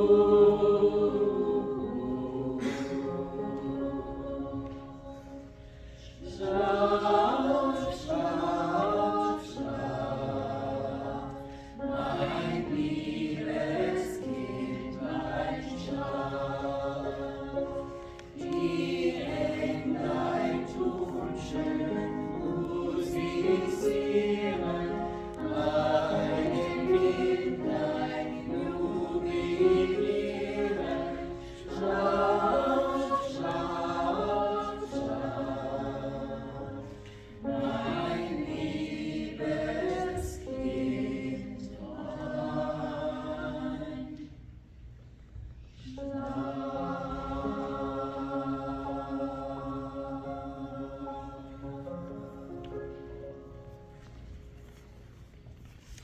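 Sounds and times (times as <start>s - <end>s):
church choir singing: 0.0s - 44.9s, 45.6s - 56.0s.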